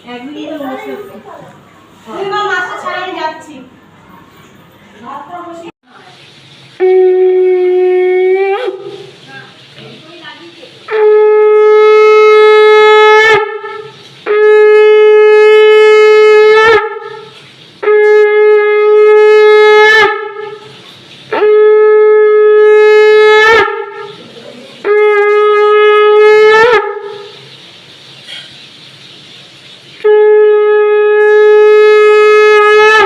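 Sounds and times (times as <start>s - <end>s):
conch shell blasts: 6.8s - 9.1s, 10.9s - 24.2s, 24.8s - 27.5s, 30.0s - 33.0s
breaths: 28.2s - 28.6s.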